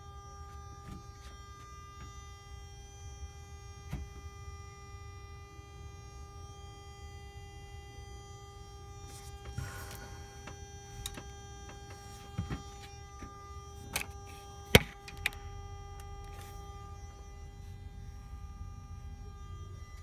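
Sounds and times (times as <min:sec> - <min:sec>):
engine whine: 0:08.7 - 0:20.0.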